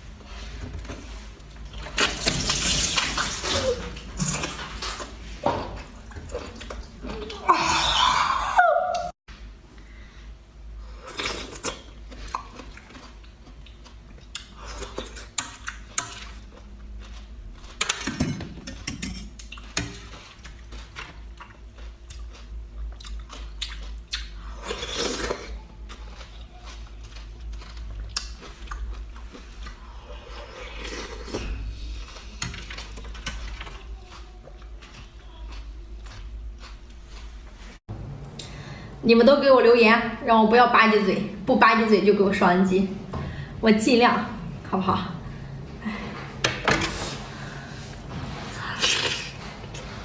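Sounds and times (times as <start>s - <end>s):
wet chewing and lip-smacking: 11.1s - 37.4s.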